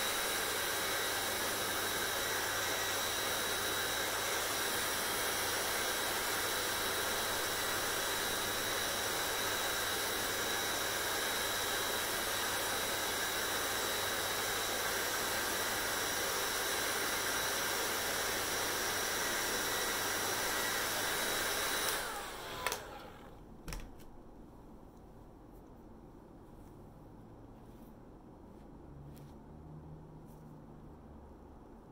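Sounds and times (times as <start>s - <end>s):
hair dryer blowing: 0.0s - 23.8s
hair dryer switch click: 21.8s - 23.1s.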